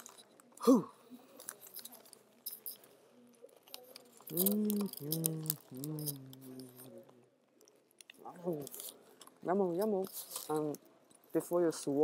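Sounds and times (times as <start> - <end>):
person humming mmm: 4.3 - 6.6.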